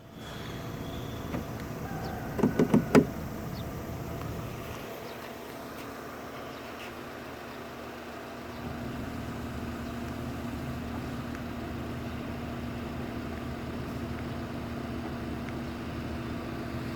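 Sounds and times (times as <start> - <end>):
diesel truck engine idling: 0.0 - 16.9.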